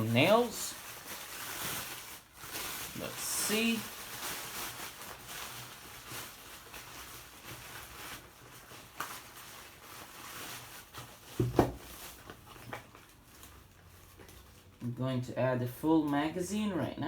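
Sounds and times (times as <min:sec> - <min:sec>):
knock: 0:11.4 - 0:11.8.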